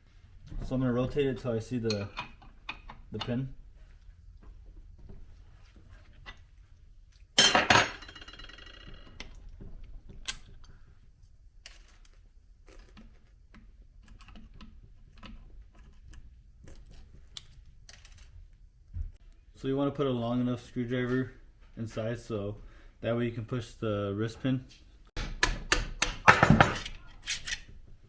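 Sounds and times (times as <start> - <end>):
metal tools tapping and clicking: 1.8 - 3.4, 25.3 - 27.6.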